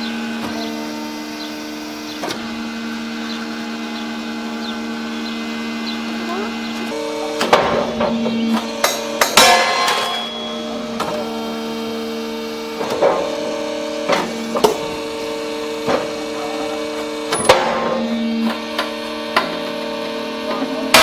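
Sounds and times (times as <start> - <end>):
hydraulic machine humming: 0.0 - 21.0
metal clanks and bangs: 7.3 - 11.2, 17.2 - 19.6.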